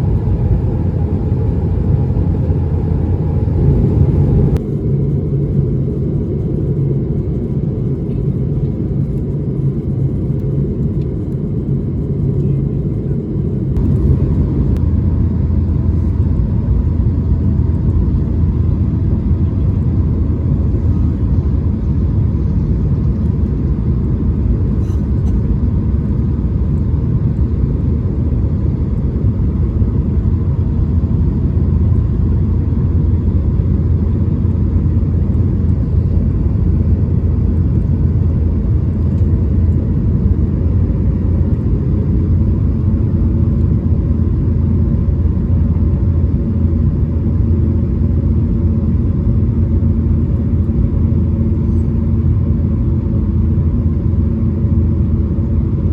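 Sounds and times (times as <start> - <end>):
aircraft cabin rumble: 0.0 - 55.9.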